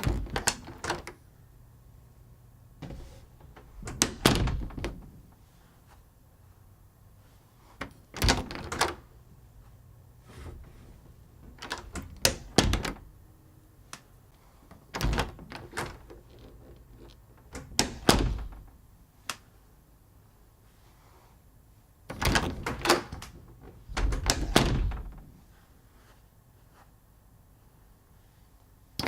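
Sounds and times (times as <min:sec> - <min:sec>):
door closing thud: 0:00.0 - 0:01.1, 0:02.8 - 0:05.2, 0:11.4 - 0:13.1, 0:14.9 - 0:16.6, 0:17.4 - 0:18.8, 0:22.1 - 0:25.4
door latch clicks and knocks: 0:00.0 - 0:01.2, 0:02.8 - 0:05.1, 0:08.2 - 0:09.0, 0:11.4 - 0:13.1, 0:14.9 - 0:18.8, 0:22.1 - 0:25.3.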